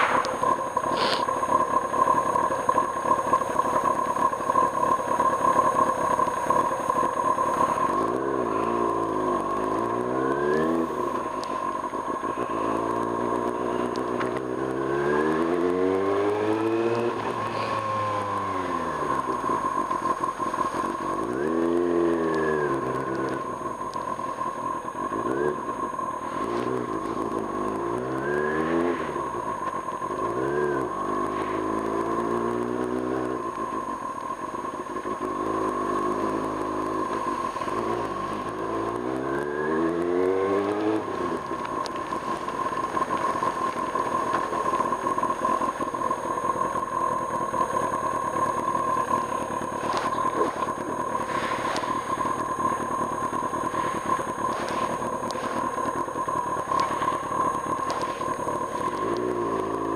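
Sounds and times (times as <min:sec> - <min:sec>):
motorcycle engine revving: 0:00.0 - 0:59.9
steady high whine: 0:00.0 - 0:59.9
wind and road noise: 0:00.0 - 0:59.9.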